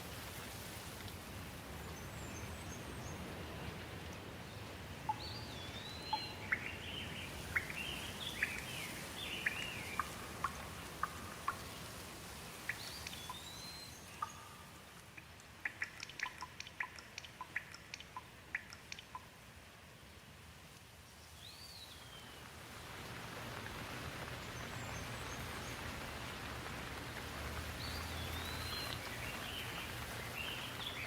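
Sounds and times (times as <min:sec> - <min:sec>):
drips ticking off leaves: 0:00.0 - 0:31.0
rain falling on leaves: 0:00.0 - 0:31.0
bird chirping: 0:05.1 - 0:11.9, 0:12.6 - 0:15.0, 0:15.6 - 0:19.3, 0:27.8 - 0:31.0.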